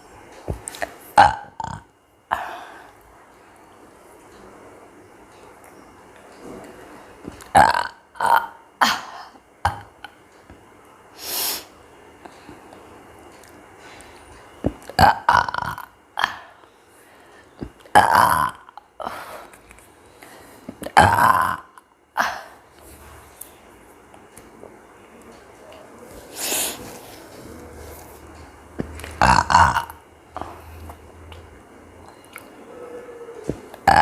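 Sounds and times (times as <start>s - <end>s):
woman burping: 1.2s - 2.6s, 7.5s - 10.2s, 14.9s - 16.6s, 17.9s - 19.1s, 20.8s - 22.6s, 29.2s - 30.5s, 33.8s - 34.0s.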